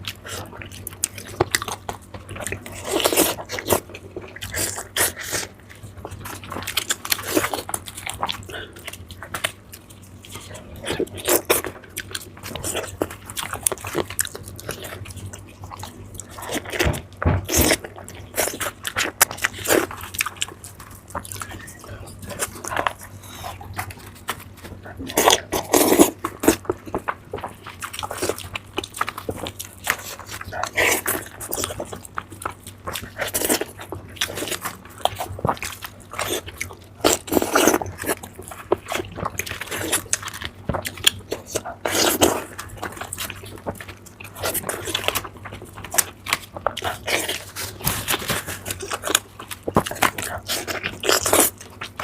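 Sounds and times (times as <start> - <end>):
person chewing and biting: 0.0 - 52.0.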